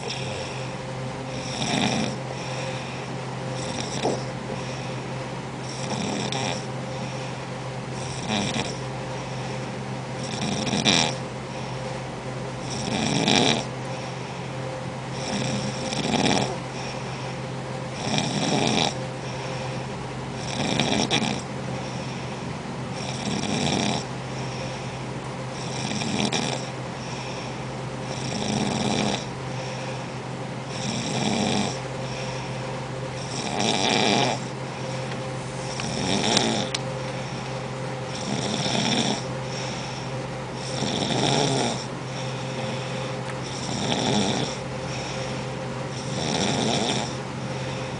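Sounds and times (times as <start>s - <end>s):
rhythmic snoring: 0.0s - 12.0s, 12.6s - 47.9s.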